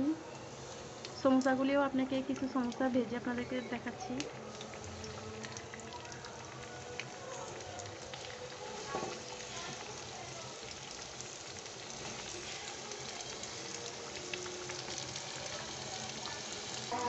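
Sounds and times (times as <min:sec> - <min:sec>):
food deep-frying in hot oil: 0:00.0 - 0:17.0.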